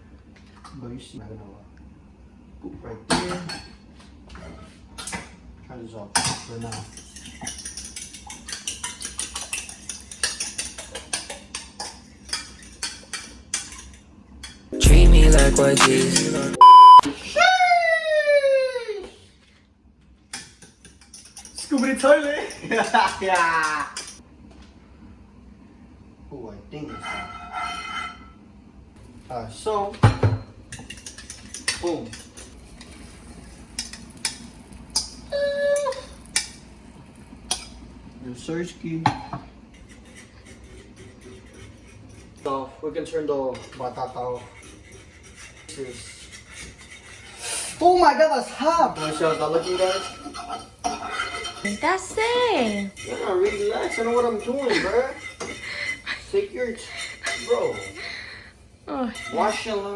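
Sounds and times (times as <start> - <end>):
kitchen clicks and taps: 6.2 - 14.6
utensil clinking against dish: 6.2 - 14.6, 20.3 - 24.2, 30.0 - 32.9, 48.8 - 58.4, 59.1 - 59.9
short tone dipping in pitch: 14.8 - 17.1.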